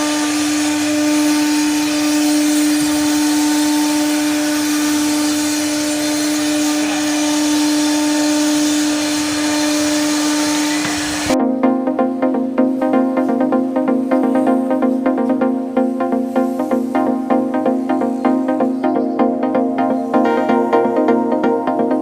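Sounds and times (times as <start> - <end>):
hiss of cutting: 0.0 - 11.4.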